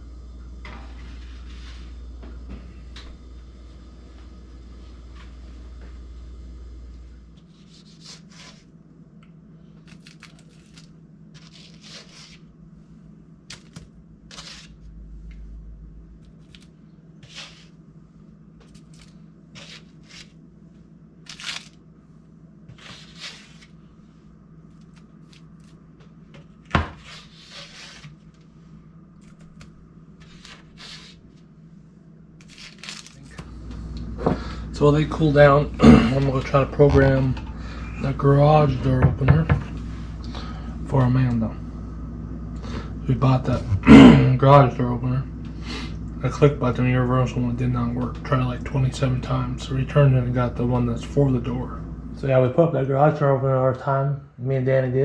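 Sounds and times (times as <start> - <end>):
steady low hum: 0.0 - 55.0
kitchen scrapes and rustles: 10.0 - 12.4, 14.3 - 14.8, 22.7 - 23.7, 26.8 - 28.2.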